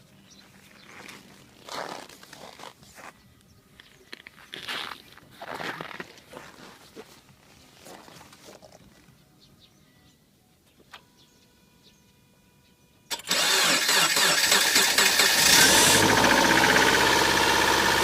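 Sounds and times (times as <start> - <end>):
car engine starting and idling: 13.1 - 18.0
engine knocking: 15.2 - 18.0.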